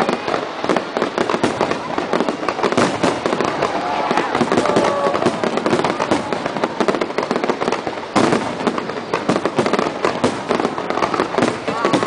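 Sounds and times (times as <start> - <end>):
firework bang: 0.0 - 12.0
fireworks crackling: 0.0 - 12.0.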